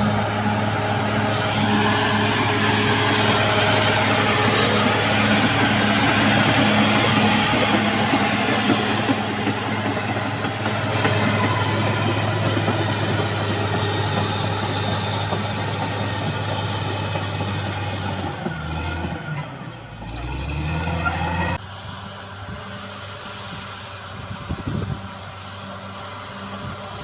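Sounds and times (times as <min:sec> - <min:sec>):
bulldozer diesel engine running: 0:00.0 - 0:21.6
clatter of steel tracks: 0:00.0 - 0:21.6.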